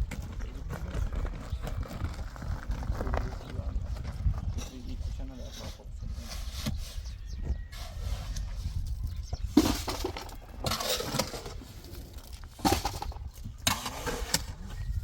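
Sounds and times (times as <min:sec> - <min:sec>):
rough scraping and clinking: 0:04.4 - 0:15.0.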